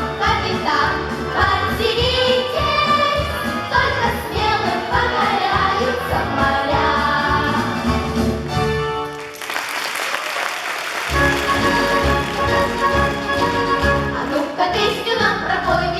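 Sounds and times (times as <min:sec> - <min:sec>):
group singing in unison: 0:00.4 - 0:07.9, 0:13.6 - 0:15.8
instrumental accompaniment: 0:11.1 - 0:15.1.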